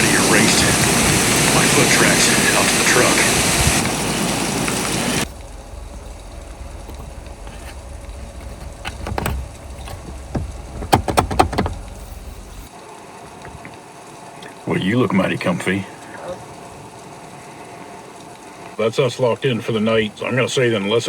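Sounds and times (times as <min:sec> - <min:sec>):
door latches clicking: 0:05.2 - 0:12.7
low rumble: 0:05.2 - 0:12.7.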